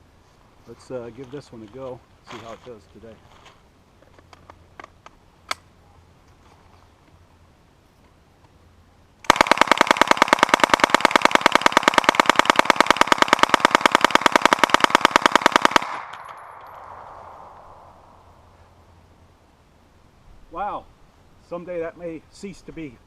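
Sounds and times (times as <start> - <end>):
submachine gun full-auto burst: 9.3 - 16.2
gunfire echo: 9.3 - 18.6.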